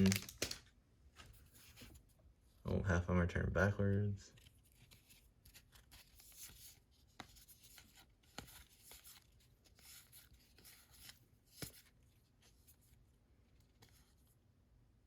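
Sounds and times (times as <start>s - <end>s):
trading cards sliding and rubbing: 4.3s - 12.8s.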